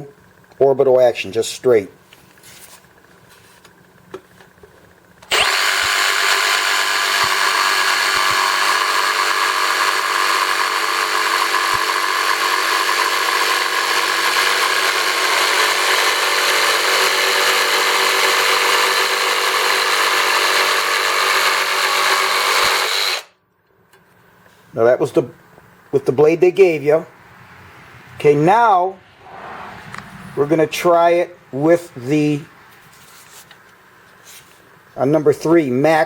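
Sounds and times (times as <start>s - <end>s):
jigsaw sawing through wood: 5.3s - 23.3s.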